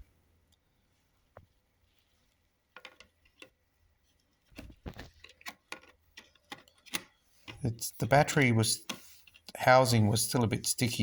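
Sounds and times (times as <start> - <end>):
small plastic parts clicking: 2.7 - 3.6, 4.5 - 7.6.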